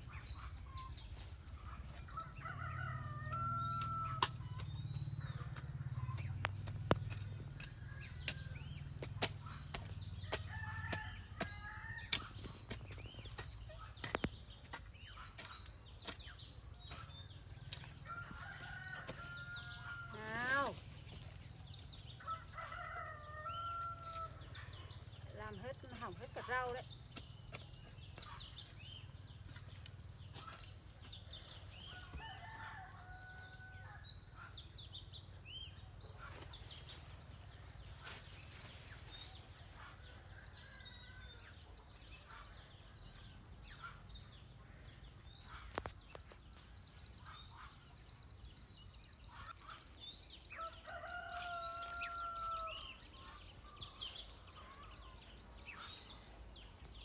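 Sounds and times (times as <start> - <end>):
chickens chirping and clucking: 0.0 - 11.5
rooster crowing: 2.2 - 4.3, 22.2 - 24.4, 31.9 - 34.0, 50.6 - 52.9.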